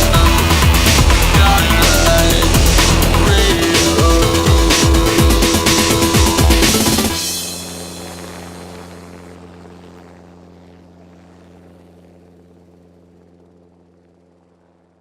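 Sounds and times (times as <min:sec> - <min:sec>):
low chord ringing out: 0:00.0 - 0:09.2.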